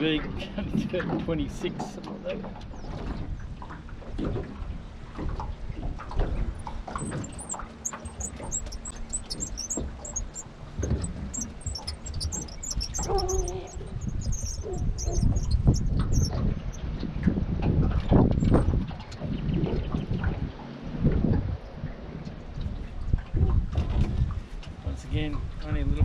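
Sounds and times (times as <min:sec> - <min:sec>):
wind rumble on microphone: 0:00.0 - 0:26.0
small birds chirping: 0:06.9 - 0:16.9.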